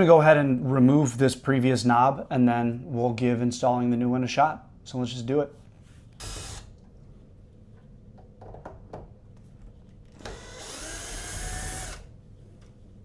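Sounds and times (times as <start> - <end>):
cordless drill motor running: 6.2 - 6.8, 10.1 - 12.1
drill bit clicks: 10.1 - 12.1.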